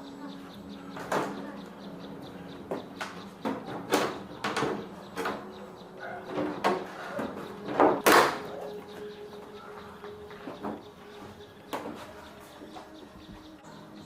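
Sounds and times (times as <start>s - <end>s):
hard parts knocking and clicking: 2.5s - 8.8s.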